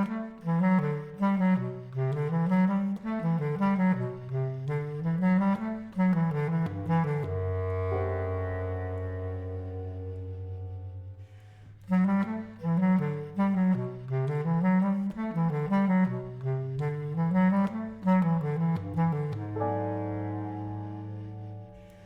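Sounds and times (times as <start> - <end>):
bass clarinet: 0.0 - 22.0
piano: 0.0 - 22.0.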